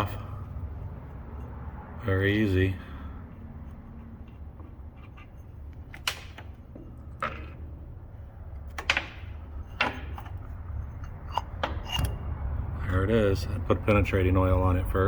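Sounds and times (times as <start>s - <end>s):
steady low hum: 0.0s - 15.0s
tools and metal parts clanking: 4.2s - 7.8s, 8.5s - 12.3s.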